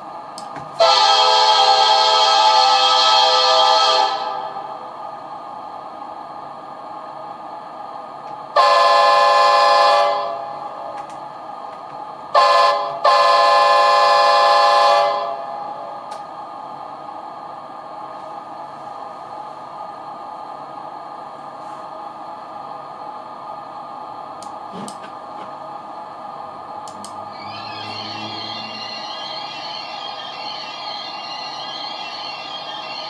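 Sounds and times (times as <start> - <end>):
train horn blasts: 0.8 - 4.4, 8.6 - 10.4, 12.4 - 15.4, 27.0 - 29.1
steady hum: 23.8 - 32.0.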